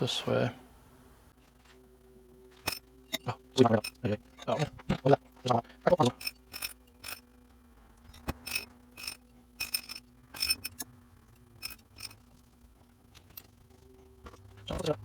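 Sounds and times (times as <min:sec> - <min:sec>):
small steel parts clicking: 0:02.6 - 0:04.6, 0:05.4 - 0:13.8.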